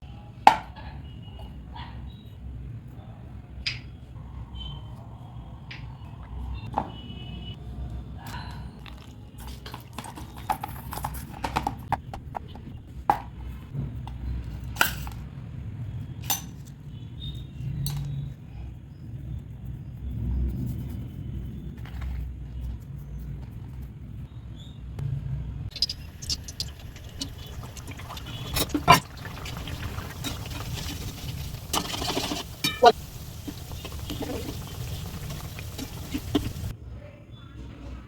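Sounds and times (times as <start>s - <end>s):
utensils and dishes knocking: 31.8s - 33.0s.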